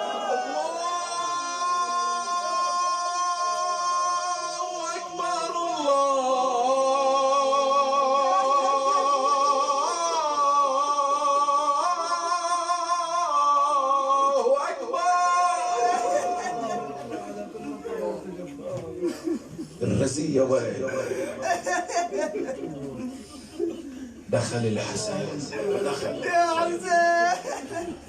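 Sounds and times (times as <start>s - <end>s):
man chanting a lament: 0.2s - 18.2s.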